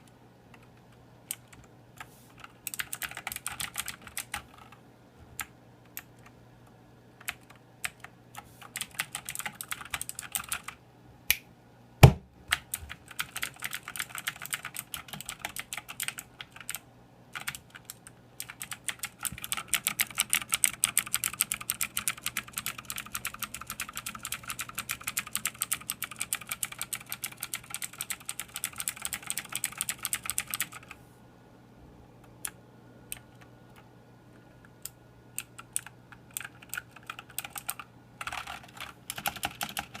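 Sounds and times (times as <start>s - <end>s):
mechanical keyboard typing: 2.4s - 4.8s, 7.2s - 10.8s, 12.5s - 16.8s, 17.4s - 31.0s, 34.8s - 40.0s
loud thump: 12.0s - 12.3s.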